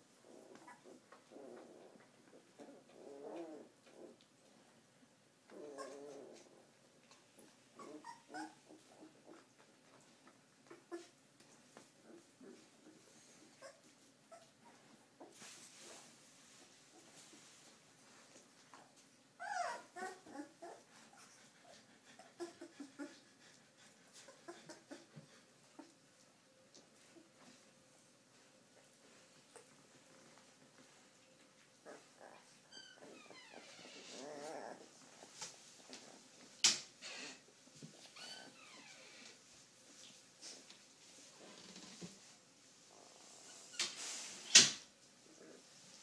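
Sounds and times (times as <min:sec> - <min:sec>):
puppies whimpering and squeaking: 0:00.2 - 0:04.2, 0:05.5 - 0:06.6, 0:07.4 - 0:09.5, 0:12.0 - 0:15.4, 0:18.8 - 0:26.0, 0:31.8 - 0:36.2, 0:37.0 - 0:39.4.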